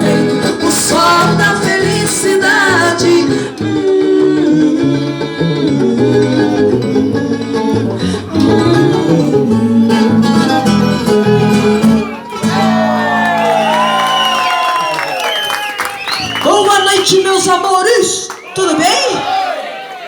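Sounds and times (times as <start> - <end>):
plucked guitar: 0.0 - 14.0
bass line: 0.0 - 14.1.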